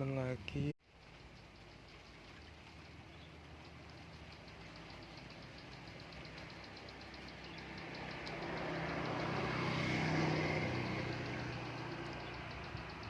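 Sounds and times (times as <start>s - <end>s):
vehicle engine passing by: 3.3s - 13.0s.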